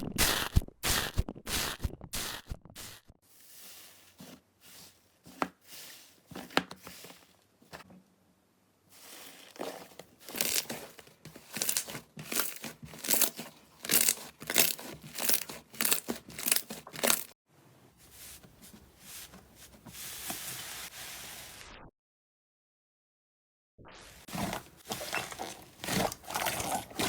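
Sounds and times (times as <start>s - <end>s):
soft handling noise: 3.6s - 8.2s, 16.3s - 21.5s, 24.3s - 27.0s.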